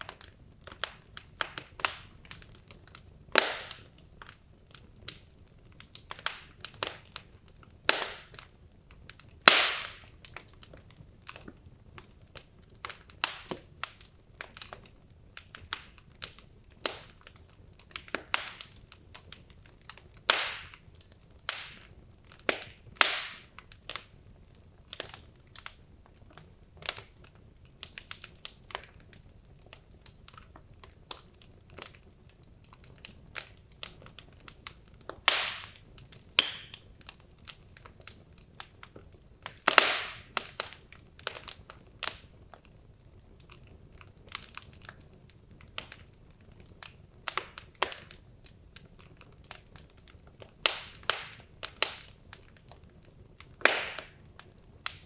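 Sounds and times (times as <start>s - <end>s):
logs crackling in a fireplace: 0.0s - 55.0s
loud pops with hiss: 3.4s - 3.8s, 7.9s - 8.4s, 9.5s - 10.1s, 20.3s - 20.7s, 22.4s - 23.5s, 35.3s - 35.8s, 36.4s - 36.8s, 39.6s - 40.6s, 53.6s - 54.2s.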